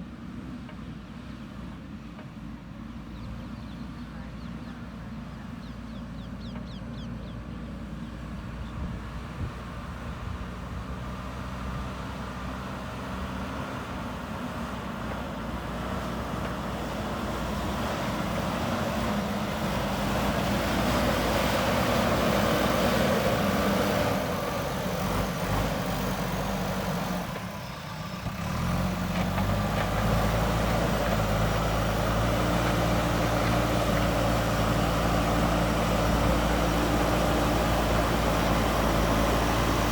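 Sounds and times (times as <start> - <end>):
backhoe diesel engine running: 1.5 - 39.9.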